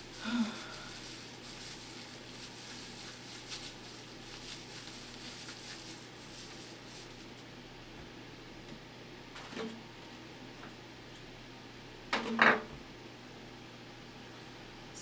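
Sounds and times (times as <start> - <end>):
plastic bag crinkling: 0.0 - 7.5.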